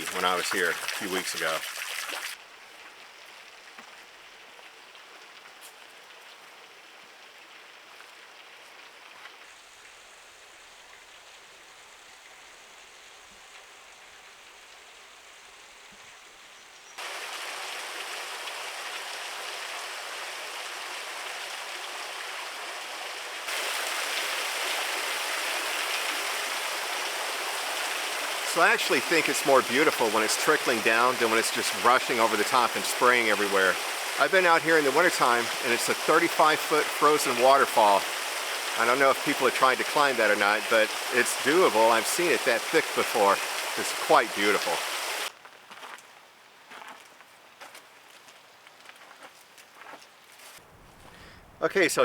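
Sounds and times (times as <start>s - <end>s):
waterfall splashing over rock: 0.0s - 2.4s, 17.0s - 45.3s.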